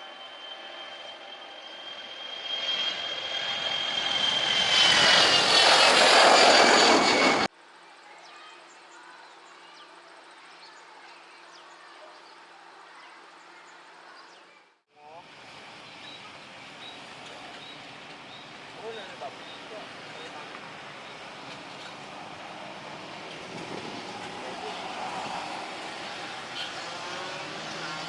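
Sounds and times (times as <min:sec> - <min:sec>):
airliner engines whining: 0:00.0 - 0:07.5, 0:15.2 - 0:28.0.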